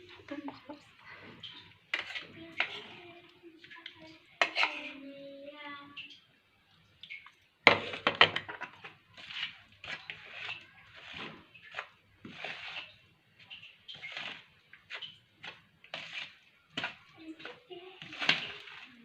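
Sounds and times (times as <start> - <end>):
utensils and dishes clattering: 0.0 - 3.0, 7.7 - 11.9
scraping and knocking from mixing: 7.7 - 19.0.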